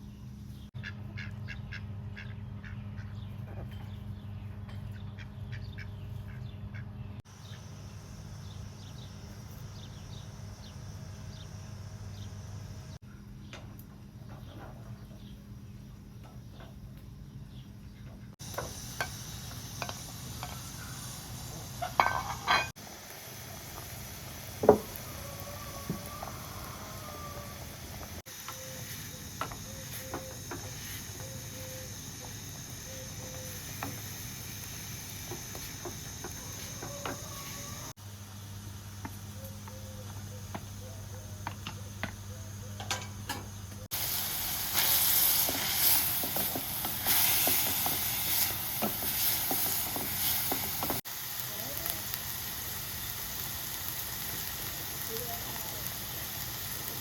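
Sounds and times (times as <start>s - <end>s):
food sizzling in a pan: 18.4s - 38.0s, 43.9s - 57.0s.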